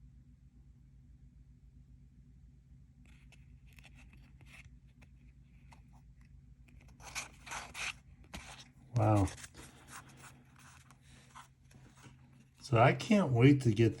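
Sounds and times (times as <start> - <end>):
cards sliding and rustling: 3.0 - 12.6.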